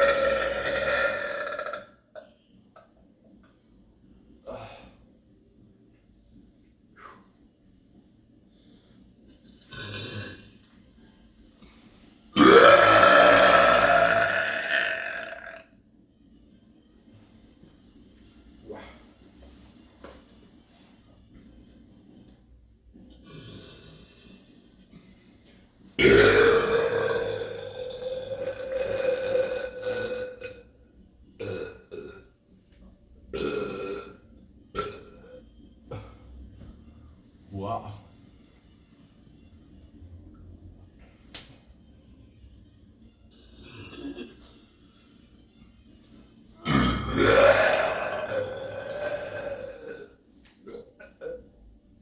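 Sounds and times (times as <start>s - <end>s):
person burping: 0.0s - 2.3s, 9.7s - 10.6s, 12.4s - 15.7s, 26.0s - 30.6s, 31.4s - 32.3s, 33.3s - 36.1s, 43.4s - 44.5s, 46.6s - 51.5s.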